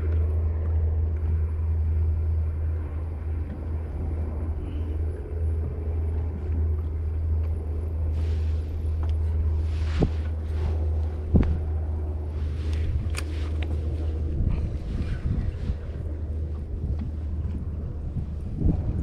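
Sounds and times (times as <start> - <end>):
boat motor idling: 0.0 - 19.0
faint steady hum: 0.0 - 19.0.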